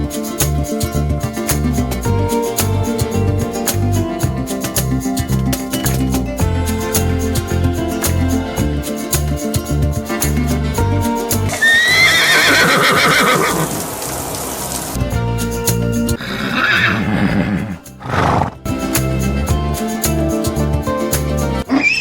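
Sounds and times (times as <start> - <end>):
background music with steady beat: 0.0 - 12.7, 15.0 - 21.7
horse whinnying: 11.6 - 13.8, 16.2 - 18.6.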